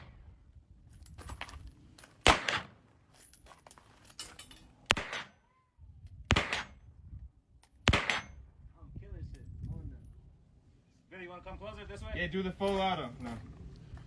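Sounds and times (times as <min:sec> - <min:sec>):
gunshots with short echo: 0:04.9 - 0:05.4, 0:06.3 - 0:06.8, 0:07.8 - 0:08.4.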